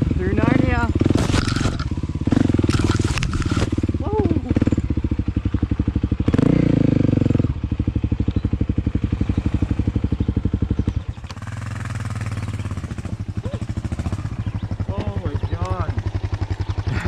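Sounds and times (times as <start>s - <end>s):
dirt bike engine revving: 0.0s - 17.0s.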